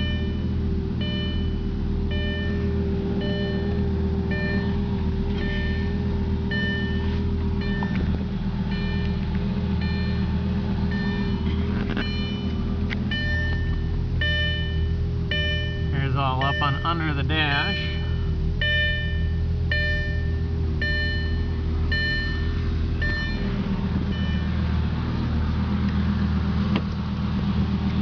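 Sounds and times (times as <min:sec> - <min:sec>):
electronic warning chime beeping: 0:00.0 - 0:04.8, 0:05.4 - 0:08.1, 0:08.7 - 0:09.2, 0:09.8 - 0:10.3, 0:10.9 - 0:23.5, 0:24.1 - 0:24.6
car engine idling: 0:00.0 - 0:28.0.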